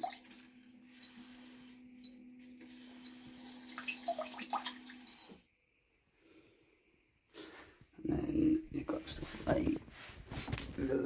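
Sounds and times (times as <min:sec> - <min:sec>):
water running: 0:00.0 - 0:00.9, 0:02.4 - 0:05.4
bidet toilet hum: 0:00.0 - 0:10.0.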